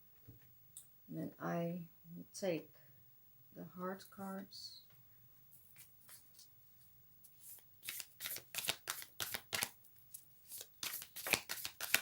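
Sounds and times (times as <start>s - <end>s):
cards being shuffled: 5.6s - 6.5s, 7.3s - 12.0s
sharp card slaps: 7.9s - 9.8s, 10.8s - 12.0s.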